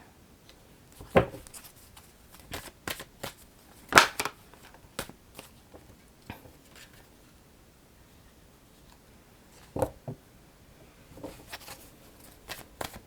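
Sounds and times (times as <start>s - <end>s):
cards snapping and tapping on table: 4.0s - 4.4s.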